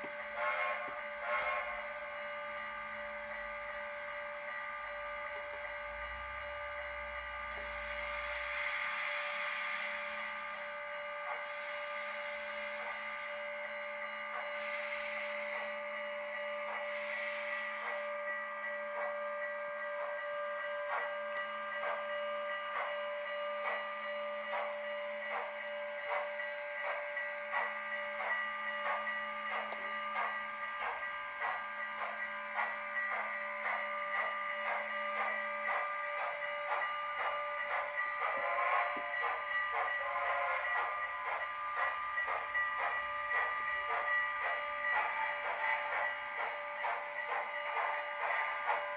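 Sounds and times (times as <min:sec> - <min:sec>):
model steam locomotive chuffs: 0:00.0 - 0:48.9
steady whine: 0:00.0 - 0:48.9.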